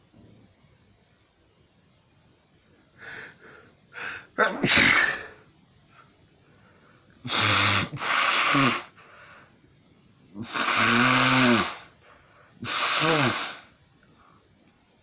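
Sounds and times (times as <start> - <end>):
person sneezing loudly: 4.0 - 5.4, 7.3 - 8.9.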